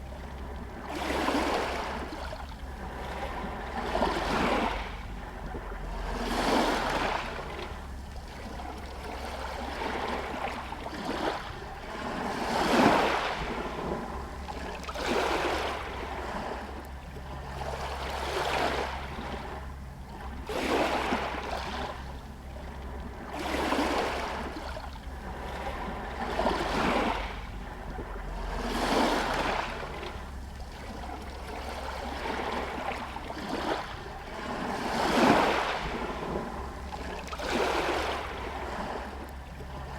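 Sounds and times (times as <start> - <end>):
small waves washing against stones: 8.4 - 16.8, 23.3 - 39.9.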